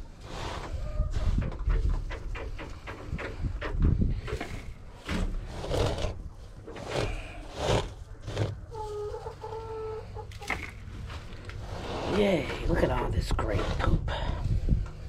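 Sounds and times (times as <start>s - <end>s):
scraping on boards: 0.2s - 8.9s
drawn-out chicken calls: 0.5s - 3.2s, 6.5s - 11.2s
chickens clucking: 0.6s - 5.0s, 6.5s - 11.6s.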